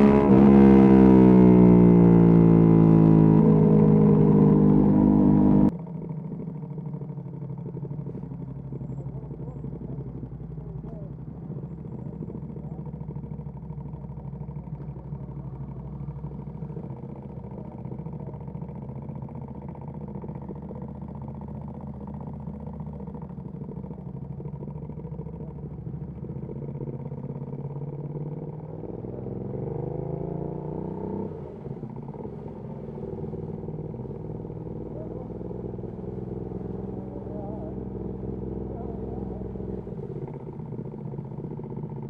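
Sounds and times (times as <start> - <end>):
motorcycle engine revving: 0.0 - 5.7, 6.5 - 42.0.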